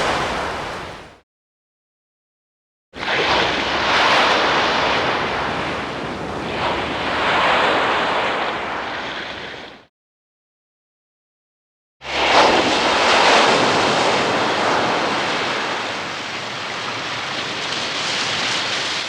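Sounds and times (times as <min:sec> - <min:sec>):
surf washing: 0:00.0 - 0:01.2, 0:03.0 - 0:09.9, 0:12.0 - 0:19.0.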